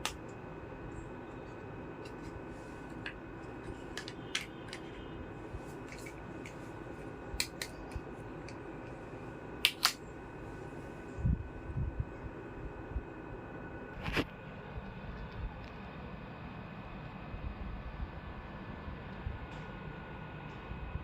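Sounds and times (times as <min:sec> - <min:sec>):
steady background hum: 0:00.0 - 0:21.0.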